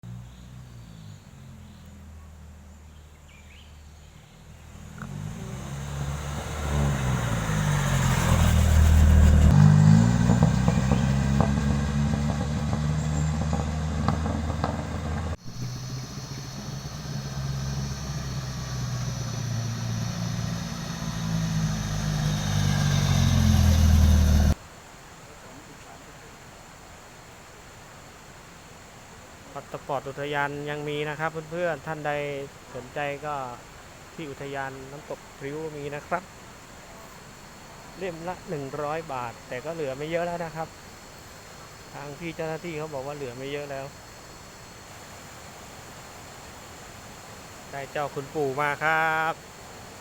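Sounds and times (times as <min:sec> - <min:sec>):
vehicle engine revving: 0:04.5 - 0:24.6.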